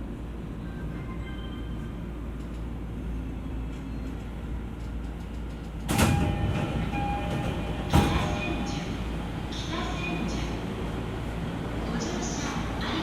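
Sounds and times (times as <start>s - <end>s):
train low hum: 0.0s - 13.0s
sliding doors closing: 5.0s - 9.7s.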